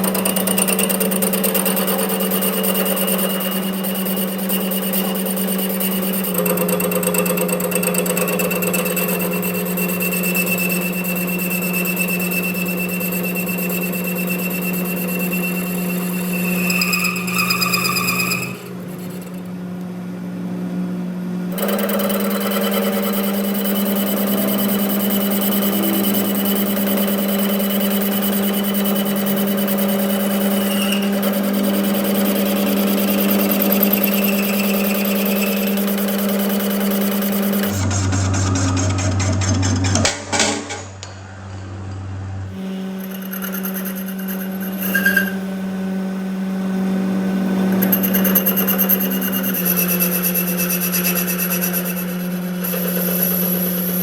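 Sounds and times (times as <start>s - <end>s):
metalworking machine humming and whining: 0.0s - 54.0s
workshop working noise: 0.0s - 54.0s.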